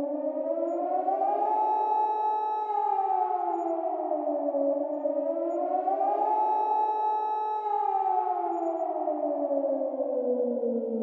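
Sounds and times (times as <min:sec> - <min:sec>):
warning siren wailing: 0:00.0 - 0:11.0.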